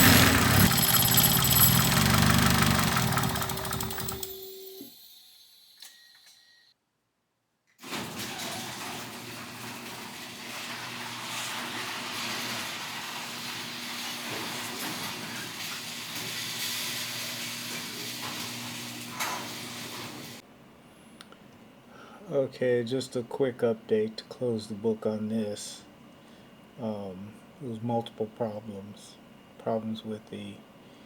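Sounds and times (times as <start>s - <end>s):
car engine idling: 0.0s - 4.3s.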